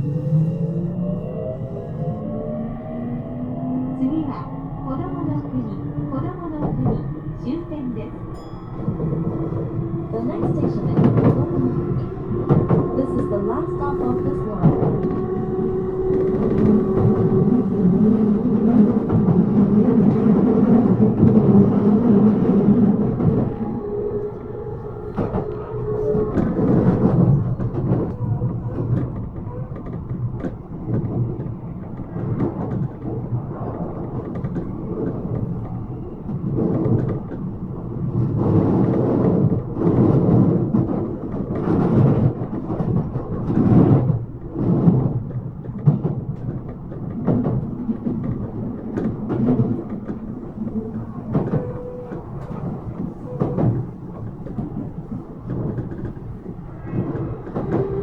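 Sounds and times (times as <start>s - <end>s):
train wheels rumbling on rail: 0.0s - 58.0s.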